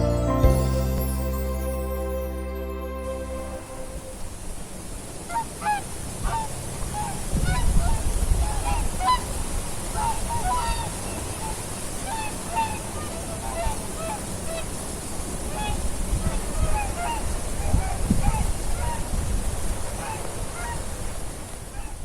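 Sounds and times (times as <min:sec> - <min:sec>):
wind rumble on microphone: 0:06.2 - 0:11.6, 0:15.3 - 0:22.0
geese honking: 0:10.0 - 0:14.7.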